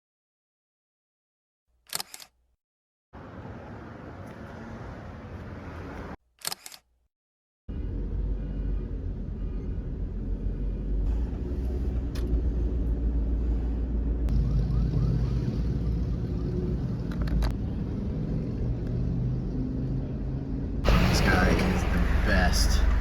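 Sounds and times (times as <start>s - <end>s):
vehicle engine and road rumble: 3.2s - 6.2s, 7.7s - 23.0s.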